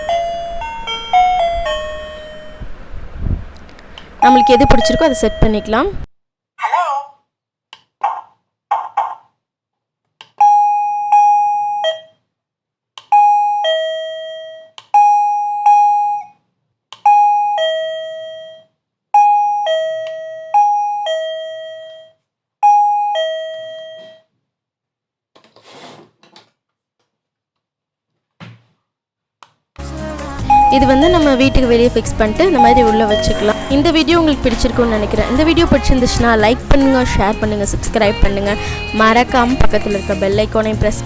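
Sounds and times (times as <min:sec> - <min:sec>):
electronic doorbell chime tune: 0:00.0 - 0:03.1, 0:04.2 - 0:05.8, 0:10.4 - 0:12.1, 0:13.1 - 0:16.3, 0:17.1 - 0:24.2, 0:30.4 - 0:35.8.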